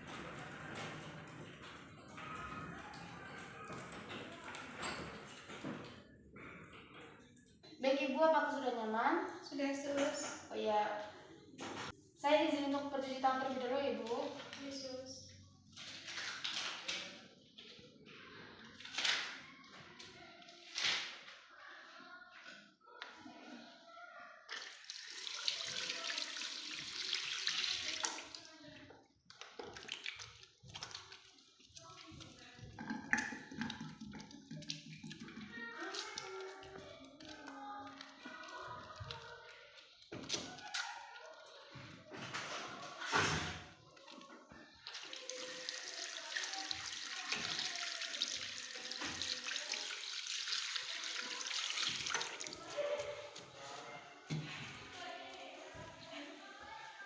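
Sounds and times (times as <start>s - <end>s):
tap water running into sink: 24.5s - 28.4s, 32.0s - 36.8s, 44.8s - 52.7s
water splashes: 44.8s - 53.4s.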